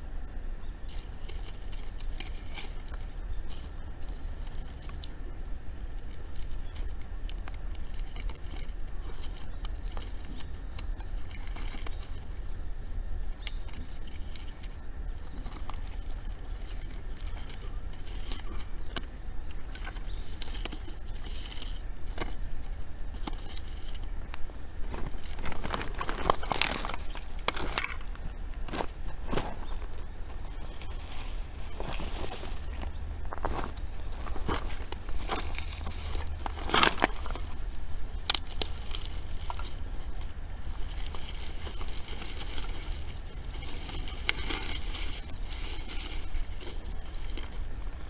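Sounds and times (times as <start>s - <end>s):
wood fire crackling and popping: 30.8s - 48.0s.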